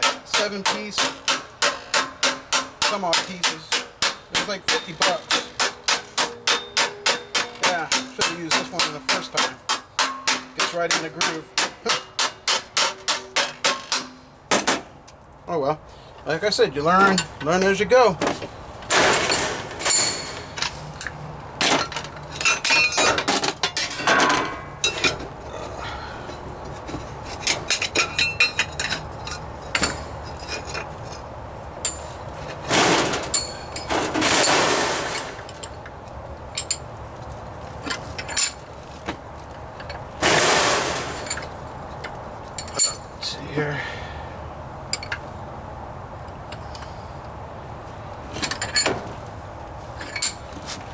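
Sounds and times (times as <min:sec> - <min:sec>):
hammer striking sheet metal: 0:00.0 - 0:14.2, 0:40.2 - 0:41.3.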